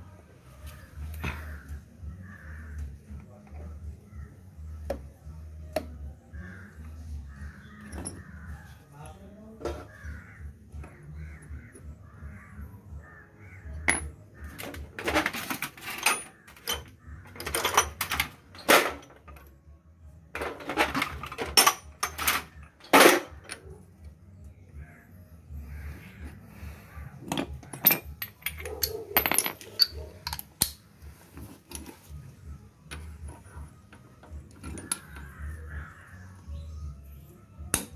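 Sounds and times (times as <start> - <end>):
crows cawing: 0.7 - 3.2, 6.3 - 8.9, 9.7 - 14.7, 16.3 - 17.4, 24.7 - 27.9, 34.8 - 36.6.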